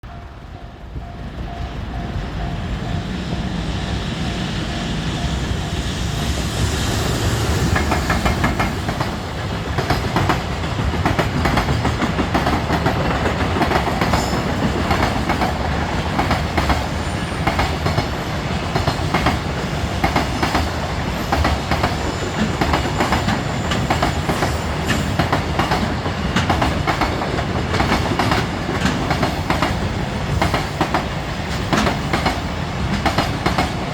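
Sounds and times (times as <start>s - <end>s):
train wheels clattering over rail joints: 7.2s - 33.9s.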